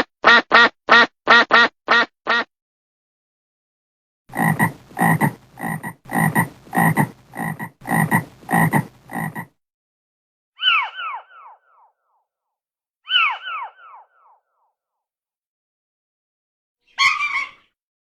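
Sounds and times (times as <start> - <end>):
frog croaking: 4.3 - 9.5.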